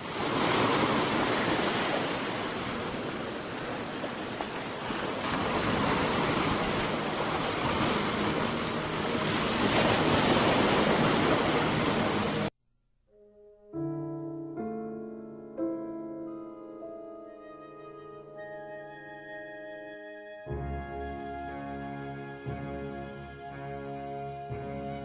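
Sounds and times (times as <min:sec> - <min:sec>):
ocean waves breaking: 0:00.0 - 0:12.5.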